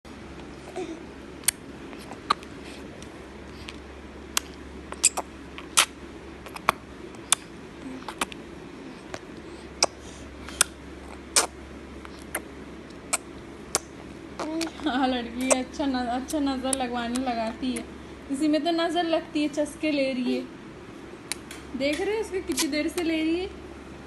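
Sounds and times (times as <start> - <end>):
baby smacking lips: 1.4 - 17.9, 21.2 - 23.2.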